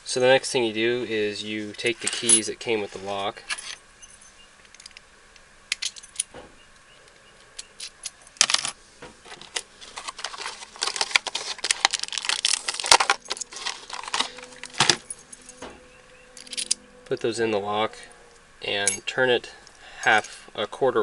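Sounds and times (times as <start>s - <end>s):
keys jangling: 5.7s - 6.3s, 12.7s - 16.8s.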